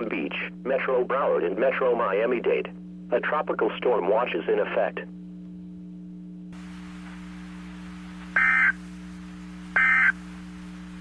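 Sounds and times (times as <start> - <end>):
steady low hum and hiss: 0.0 - 11.0
electronic data tone bursts: 8.4 - 8.8, 9.8 - 10.2.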